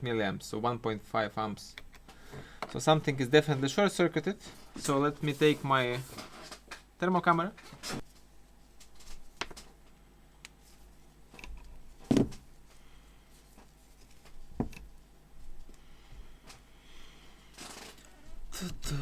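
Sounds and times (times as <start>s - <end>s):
equipment knocking on workbench: 12.1s - 12.4s, 14.6s - 14.8s.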